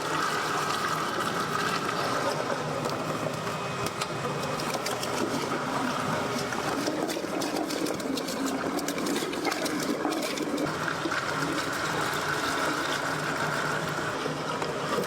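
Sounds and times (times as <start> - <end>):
meat-processing machine running: 0.0 - 15.0.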